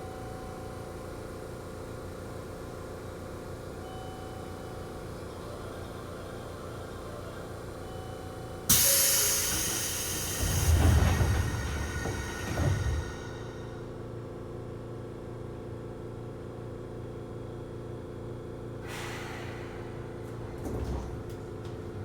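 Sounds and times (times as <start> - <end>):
electric train equipment hum: 0.2 - 14.4
compressed air hiss: 8.7 - 13.6.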